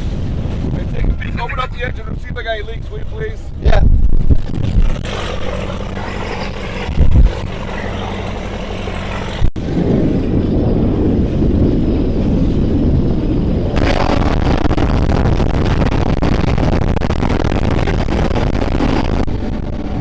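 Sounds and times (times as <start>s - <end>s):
wind buffeting microphone: 0.0s - 20.0s
powerboat engines running: 4.6s - 11.1s, 11.9s - 20.0s.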